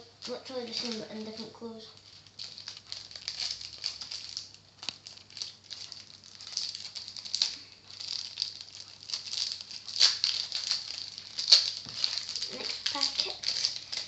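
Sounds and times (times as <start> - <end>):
trading cards rustling and crinkling: 0.0 - 14.0.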